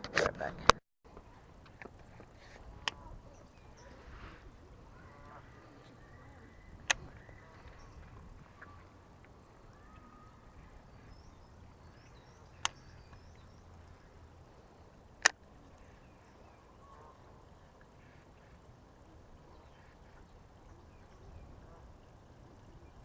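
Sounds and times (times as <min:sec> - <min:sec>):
sharp clicks: 0:00.0 - 0:03.3, 0:05.2 - 0:10.1, 0:11.9 - 0:14.1, 0:15.1 - 0:16.0
faint high chirps: 0:01.1 - 0:23.0.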